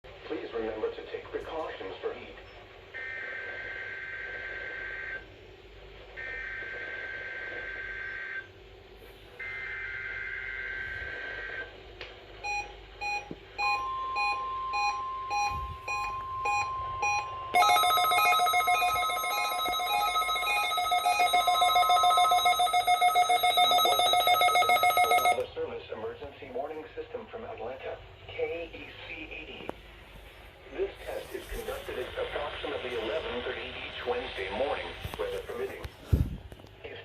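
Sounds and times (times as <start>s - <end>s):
steady warning alarm tone: 3.0s - 5.3s, 6.2s - 8.4s, 9.4s - 11.7s, 12.4s - 25.5s
loud multi-tone beeping alarm: 12.4s - 25.4s
weather alert radios beeping: 12.4s - 25.5s.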